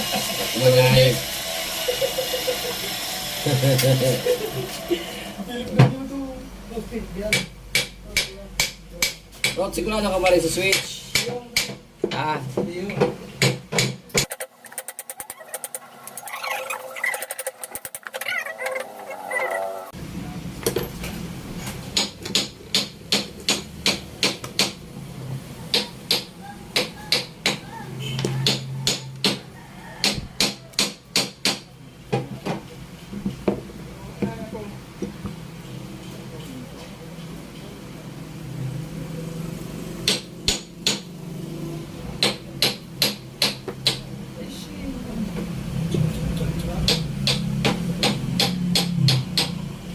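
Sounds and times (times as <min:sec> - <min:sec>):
sharp hammer-like knocks: 0:13.0 - 0:14.4, 0:21.9 - 0:24.8, 0:40.0 - 0:41.1, 0:46.8 - 0:49.6.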